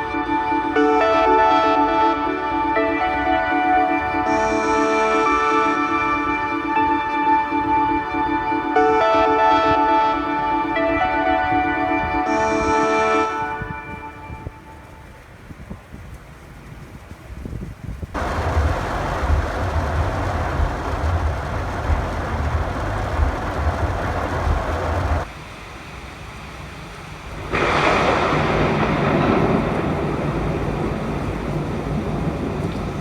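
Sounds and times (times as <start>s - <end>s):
heavy rain: 0.0s - 33.0s
wind buffeting microphone: 2.2s - 25.3s, 27.4s - 33.0s
low rumble: 18.2s - 25.3s.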